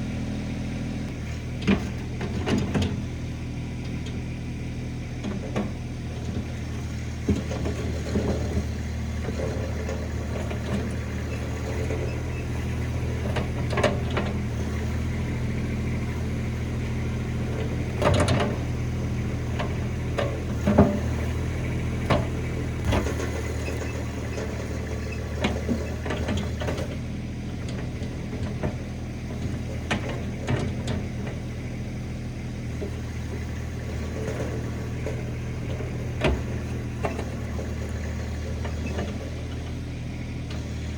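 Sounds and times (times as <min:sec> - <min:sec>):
skid steer engine running: 0:00.0 - 0:40.9
knocks and clanks: 0:17.4 - 0:31.6.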